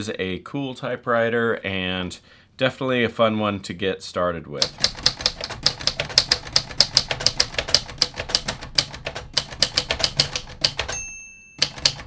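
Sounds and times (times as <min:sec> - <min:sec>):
typewriter key clacks: 0:04.6 - 0:11.0, 0:11.6 - 0:12.0.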